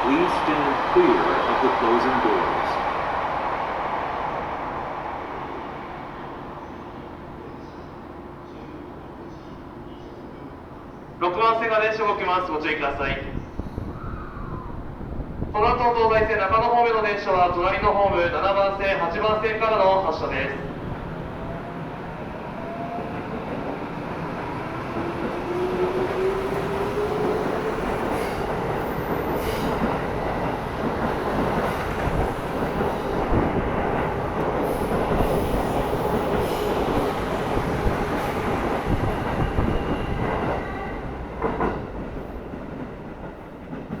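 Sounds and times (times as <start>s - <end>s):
wheels rumbling on rail: 20.5s - 44.0s.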